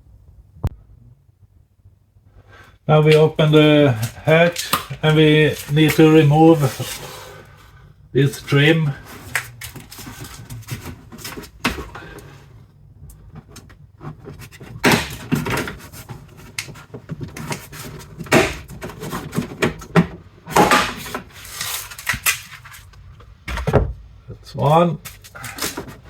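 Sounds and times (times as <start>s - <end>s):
plastic scraping and rubbing: 3.0s - 7.6s, 8.2s - 23.4s, 24.6s - 26.0s
plastic clips clicking: 4.0s - 5.0s.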